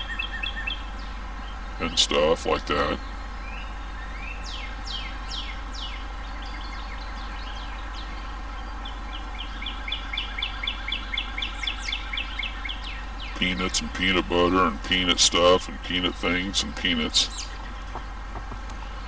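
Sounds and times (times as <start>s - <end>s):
songbirds singing: 0.0s - 19.0s
steady low hum: 0.0s - 19.0s.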